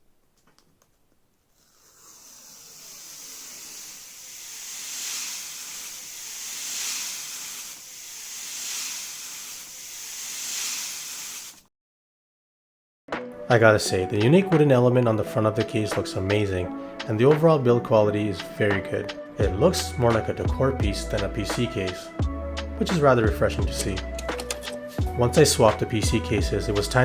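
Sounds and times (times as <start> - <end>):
hiss of blown air: 1.6 - 11.7.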